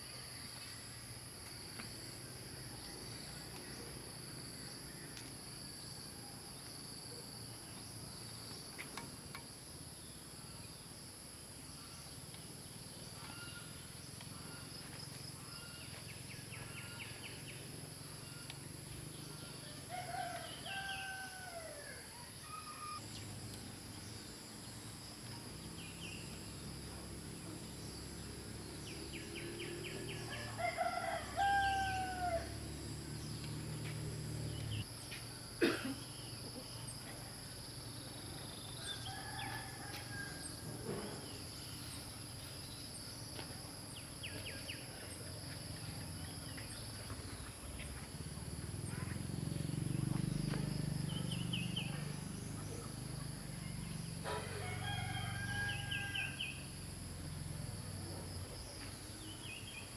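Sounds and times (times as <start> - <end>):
insects chirring: 0.0 - 59.9
rooster crowing: 19.4 - 23.0, 30.1 - 32.6, 38.8 - 40.8, 54.2 - 56.6.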